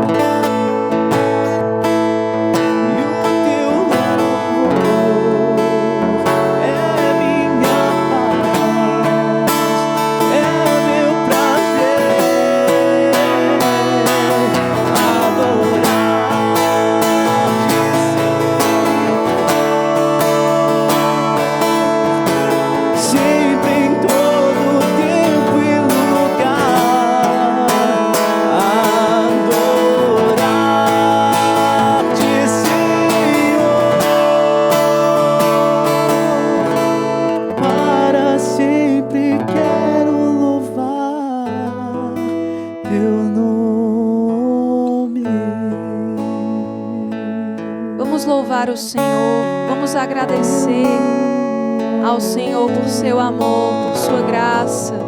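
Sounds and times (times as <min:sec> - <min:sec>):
worship music: 0:00.0 - 0:42.2
strummed acoustic guitar: 0:00.0 - 0:55.0
wavering melody line: 0:03.4 - 0:37.3.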